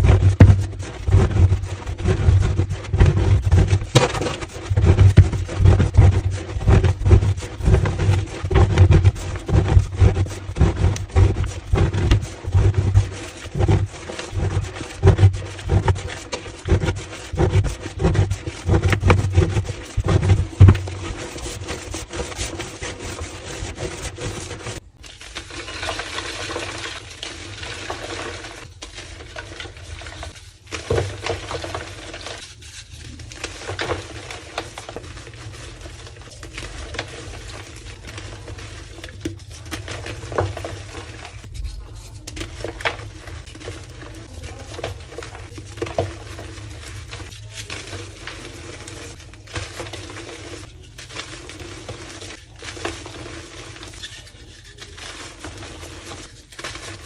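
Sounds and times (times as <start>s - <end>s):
chalk crushed by hand: 0.0s - 29.7s
chalk crumbling and rubbing: 0.0s - 57.0s.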